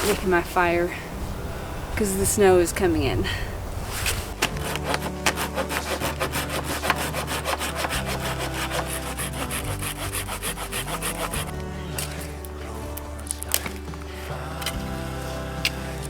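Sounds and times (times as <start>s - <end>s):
background music: 0.0s - 16.0s
hand saw cutting wood: 4.0s - 13.9s.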